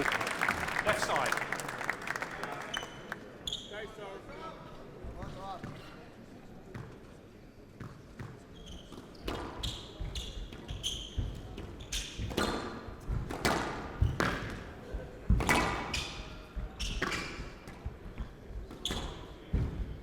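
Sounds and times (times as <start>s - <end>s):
shoes squeaking on court floor: 2.7s - 3.9s, 7.8s - 12.6s.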